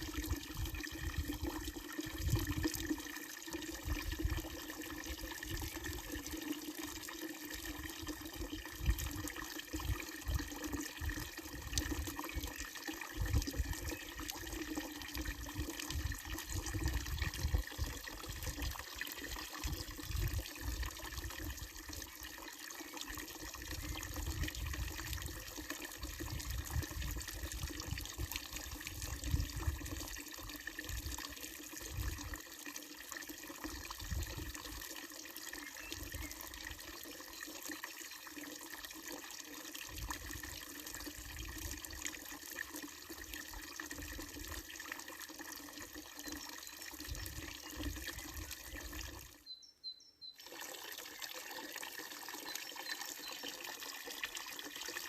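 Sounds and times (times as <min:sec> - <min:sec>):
water splashing into trough: 0:50.4 - 0:55.0.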